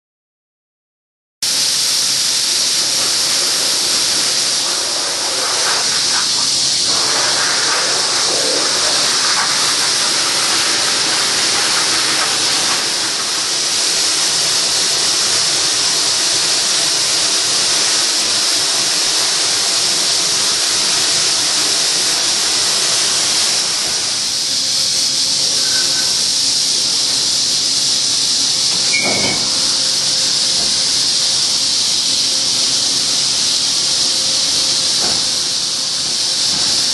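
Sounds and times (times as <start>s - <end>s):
machining center cutting hiss: 1.4s - 36.9s
short high squeal: 25.5s - 26.3s, 28.8s - 30.3s.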